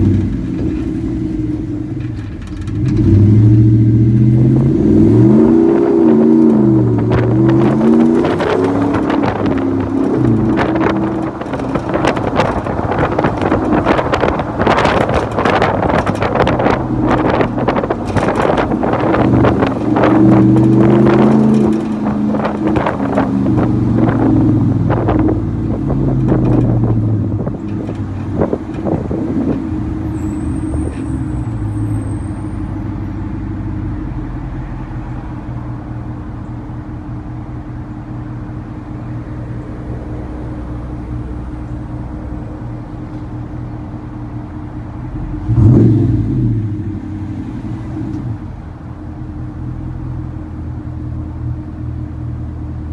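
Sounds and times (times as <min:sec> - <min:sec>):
truck engine exhaust: 0:00.0 - 0:51.5
wind buffeting microphone: 0:04.3 - 0:33.0.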